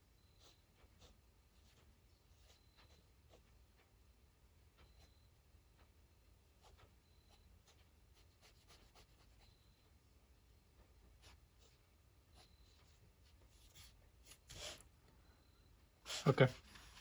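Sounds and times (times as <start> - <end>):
pen strokes on paper: 6.6 - 9.6, 11.2 - 14.8, 16.1 - 17.0.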